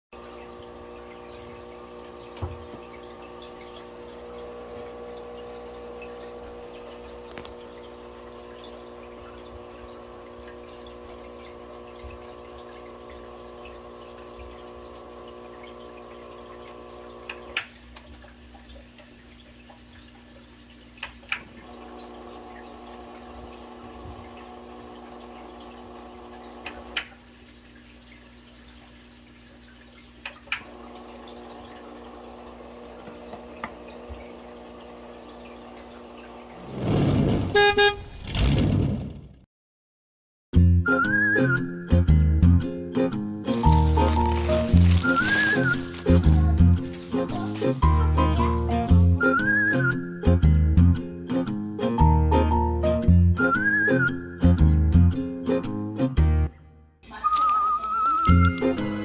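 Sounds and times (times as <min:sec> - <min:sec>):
aquarium filter humming: 0:00.1 - 0:37.6, 0:43.4 - 0:54.3
moving water: 0:00.2 - 0:37.6, 0:43.5 - 0:50.1.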